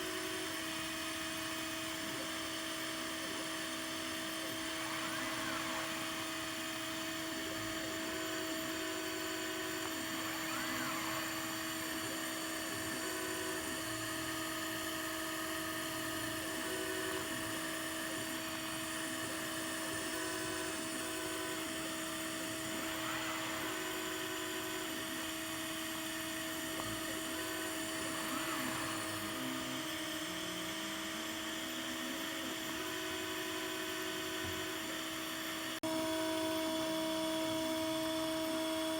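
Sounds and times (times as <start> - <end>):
rising and falling motor whine: 0.0 - 38.9
steady electrical hum: 0.0 - 38.9
stepper motors whining: 0.0 - 38.9.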